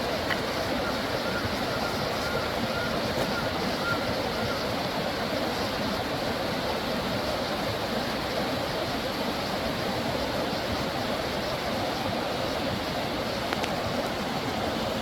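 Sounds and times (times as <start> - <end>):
stream water rushing: 0.0 - 15.0.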